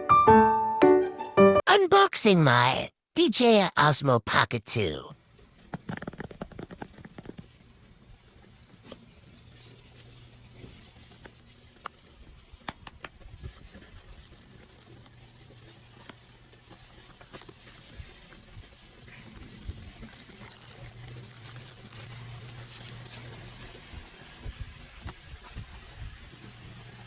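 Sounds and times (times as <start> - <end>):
packaging clicks and rustling: 9.7 - 26.6.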